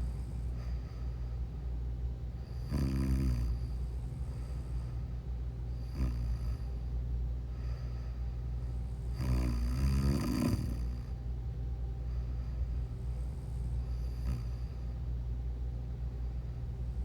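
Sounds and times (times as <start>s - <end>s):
steady low hum: 0.0s - 17.0s
person snoring: 2.6s - 3.7s, 5.8s - 6.7s, 9.0s - 11.0s, 13.8s - 14.6s.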